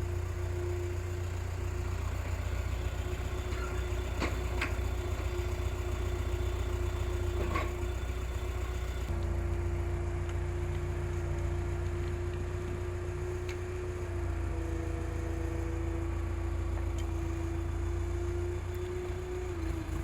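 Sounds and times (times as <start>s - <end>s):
excavator diesel engine running: 0.0s - 20.0s.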